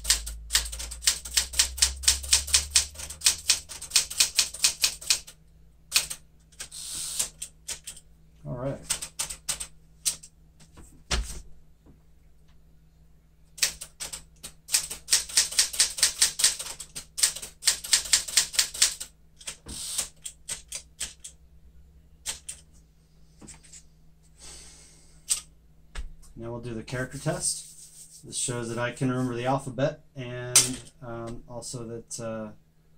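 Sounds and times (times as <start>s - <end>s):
manual typewriter key strikes: 0.0s - 5.3s, 13.6s - 21.3s.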